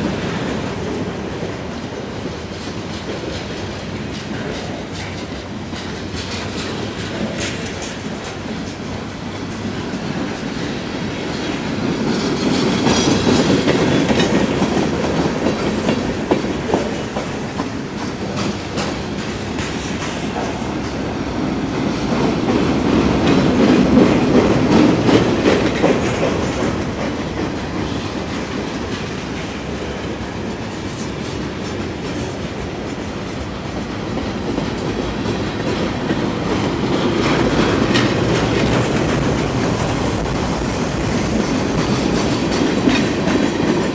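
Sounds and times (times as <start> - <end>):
freight train rolling past: 0.0 - 43.9
steel wheels clattering over rail joints: 0.0 - 43.9.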